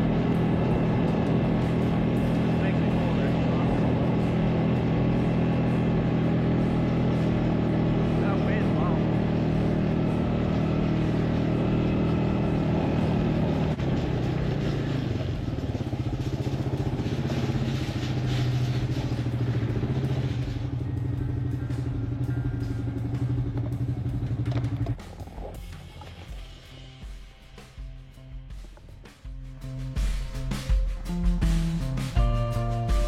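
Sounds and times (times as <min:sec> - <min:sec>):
car engine running: 0:00.0 - 0:29.1.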